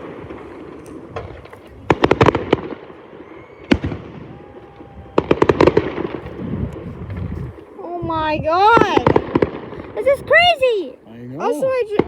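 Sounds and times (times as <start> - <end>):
fireworks bangs: 0.0 - 10.9, 11.5 - 12.0
faint thin whistle: 3.2 - 3.8.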